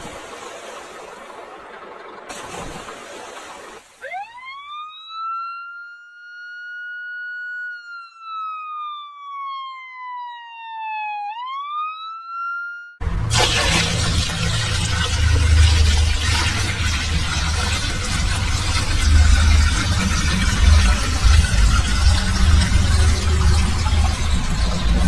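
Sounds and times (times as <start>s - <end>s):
siren winding up and down: 3.9s - 13.0s
loud burst of noise: 13.0s - 25.0s
rough noise: 13.0s - 25.0s.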